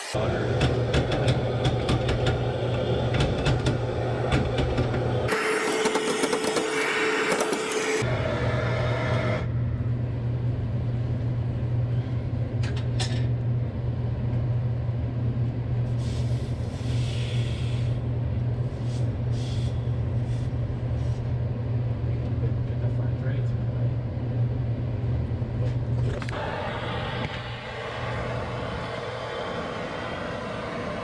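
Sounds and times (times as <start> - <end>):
low machine hum: 7.0 - 31.0
loud rushing hiss: 26.4 - 31.0.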